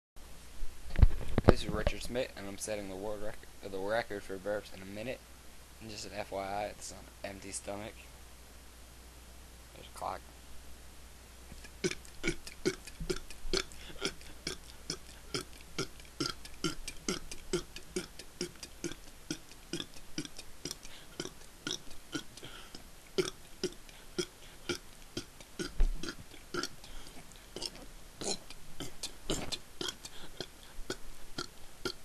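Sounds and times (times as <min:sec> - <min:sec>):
man burping: 0:11.7 - 0:32.0.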